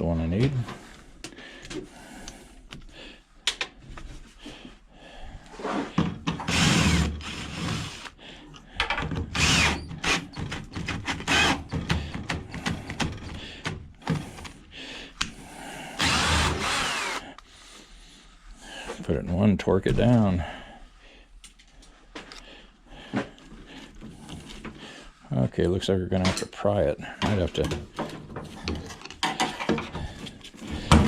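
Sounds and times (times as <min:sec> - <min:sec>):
power drill bursts: 0:06.5 - 0:08.1, 0:09.3 - 0:11.7, 0:16.0 - 0:17.3.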